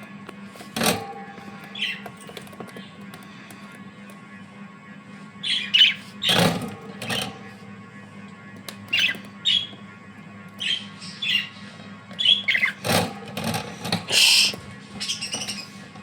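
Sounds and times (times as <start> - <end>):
steady low hum: 0.0 - 16.0
budgies chirping: 1.5 - 2.2, 5.4 - 7.5, 8.9 - 9.8, 10.6 - 16.0
harsh bird squawks: 5.4 - 6.4, 10.6 - 13.0, 14.0 - 15.9.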